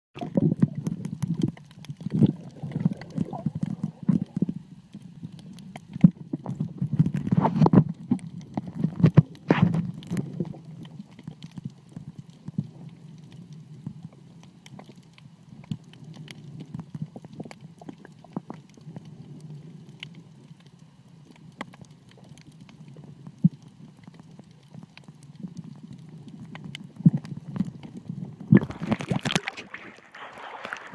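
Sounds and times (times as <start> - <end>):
water splashing: 0.2 - 4.5, 28.5 - 30.9
underwater knocks and clicks: 0.2 - 19.1, 21.3 - 30.9
muffled underwater rumble: 0.2 - 30.9.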